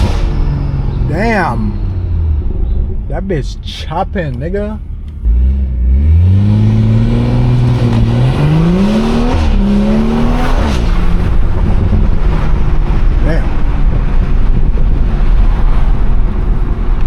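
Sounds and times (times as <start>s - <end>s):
car engine accelerating hard: 4.4s - 17.0s.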